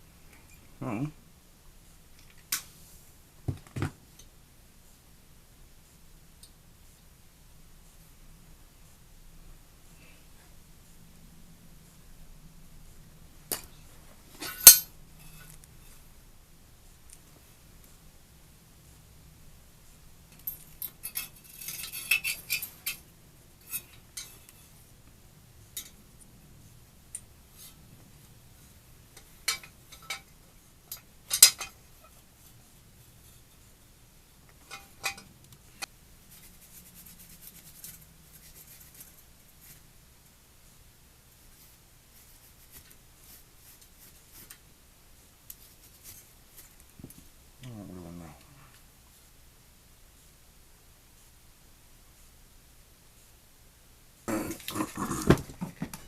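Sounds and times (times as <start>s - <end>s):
metal parts and tools clinking: 14.4s - 15.6s, 20.4s - 24.6s, 29.4s - 30.3s, 30.9s - 31.8s.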